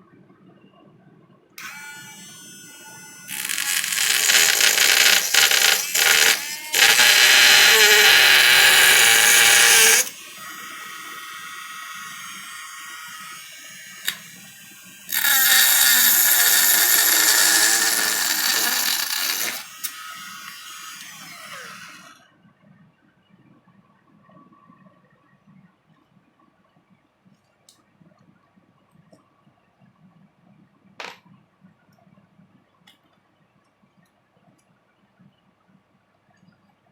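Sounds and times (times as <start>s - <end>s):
electric drill running: 1.6s - 22.2s.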